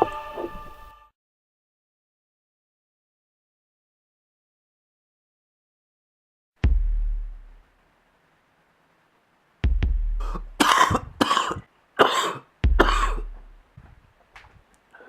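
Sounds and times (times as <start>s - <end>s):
slow electronic beat: 6.6s - 7.8s, 9.6s - 11.2s, 12.6s - 13.7s
person coughing: 10.2s - 13.3s.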